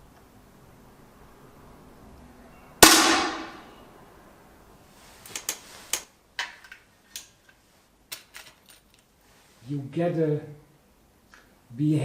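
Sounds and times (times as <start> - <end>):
air rifle shot: 2.8 - 3.8.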